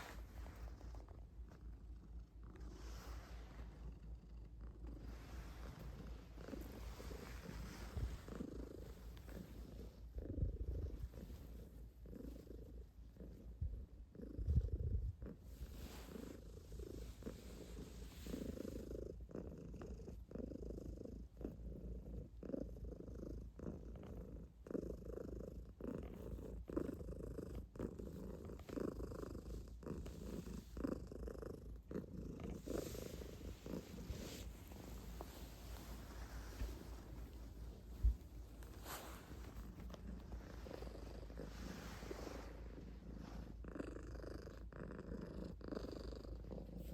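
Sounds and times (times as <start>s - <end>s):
cat purring: 0.0s - 46.9s.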